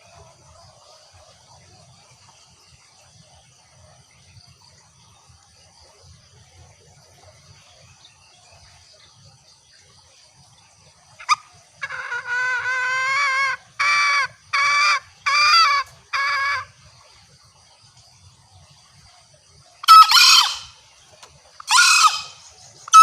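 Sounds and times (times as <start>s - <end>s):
insects trilling faintly: 0.0s - 23.0s
junglefowl calling: 11.2s - 17.1s, 19.8s - 23.0s.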